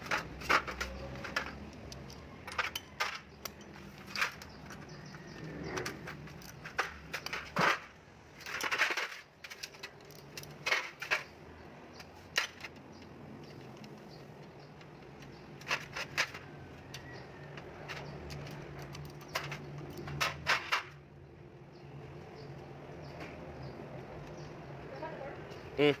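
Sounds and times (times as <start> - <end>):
metal tools clinking: 0.0 - 7.8, 8.4 - 21.0.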